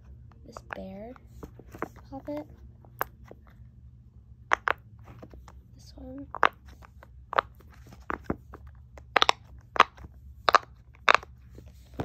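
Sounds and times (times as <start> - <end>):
pop-it fidget toy popping: 9.0 - 11.3.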